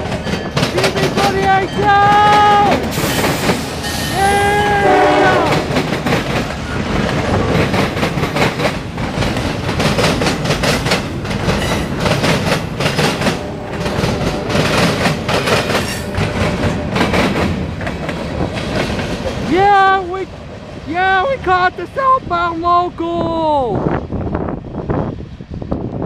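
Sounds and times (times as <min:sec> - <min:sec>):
wheels clicking over rail joints: 0:00.0 - 0:04.2, 0:05.5 - 0:20.0
freight train rolling past: 0:00.0 - 0:26.0.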